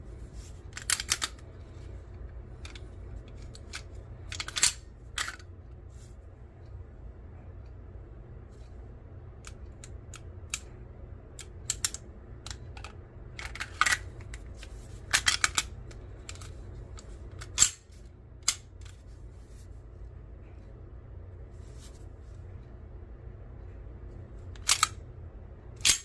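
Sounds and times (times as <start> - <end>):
steady low hum: 0.0 - 26.0
metallic clicks of pistol handling: 0.8 - 1.4, 3.4 - 5.4, 24.6 - 25.0.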